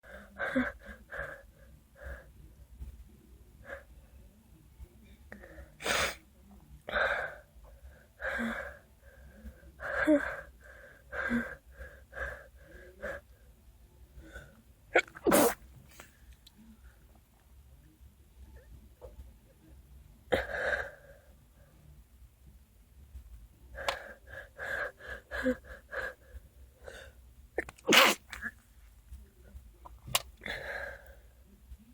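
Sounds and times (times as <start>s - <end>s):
person sneezing: 5.8s - 6.2s, 15.0s - 15.6s, 27.6s - 28.5s.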